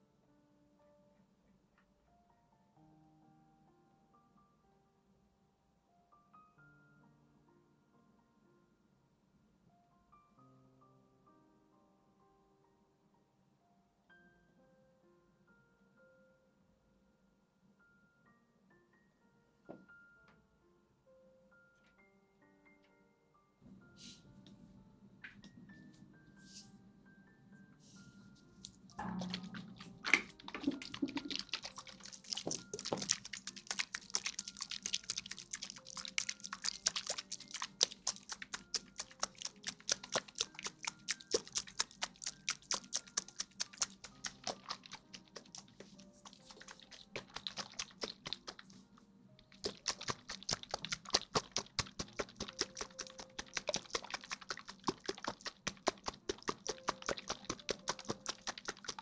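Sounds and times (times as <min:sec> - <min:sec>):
faint soft music: 0:00.0 - 0:59.0
crisp asmr clicks and taps: 0:28.6 - 0:48.8, 0:49.4 - 0:59.0.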